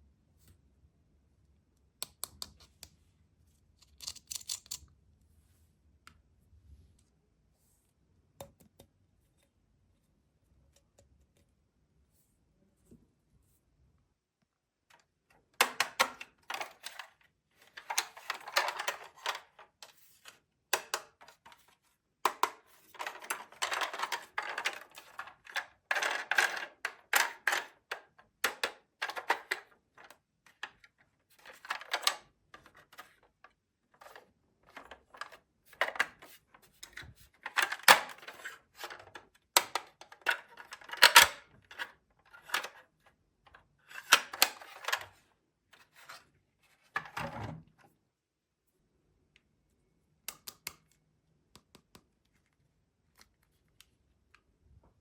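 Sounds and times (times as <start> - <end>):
plastic toy pieces clicking: 3.8 - 4.8.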